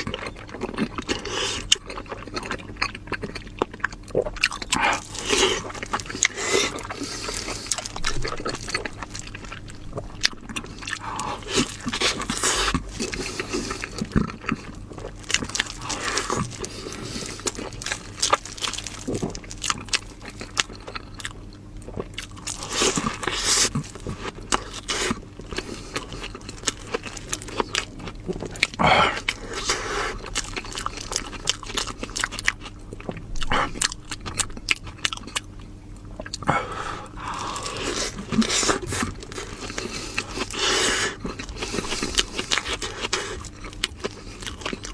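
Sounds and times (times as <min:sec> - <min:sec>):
faint steady hum: 0:00.0 - 0:44.9
person chewing food: 0:00.0 - 0:44.9.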